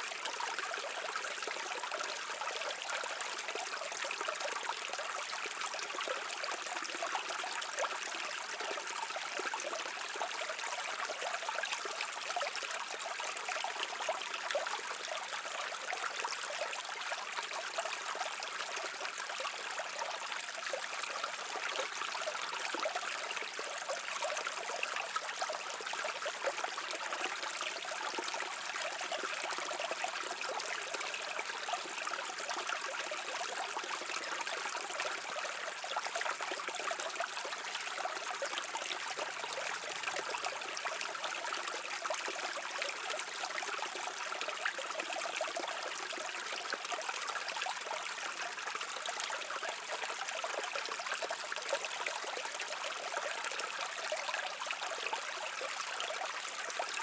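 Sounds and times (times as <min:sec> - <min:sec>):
brook babbling over stones: 0:00.0 - 0:57.0.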